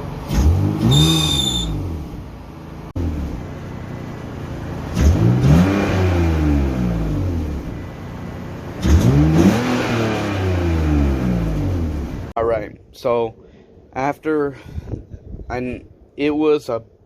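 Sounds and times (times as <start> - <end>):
car engine idling and revving: 0.0 - 12.4
faint high belt screech: 0.8 - 1.8.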